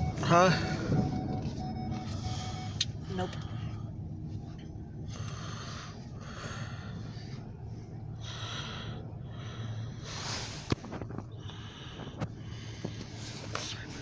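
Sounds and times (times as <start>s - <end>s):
steady low hum: 0.0s - 14.0s
close breathing: 5.0s - 10.8s, 11.4s - 14.0s.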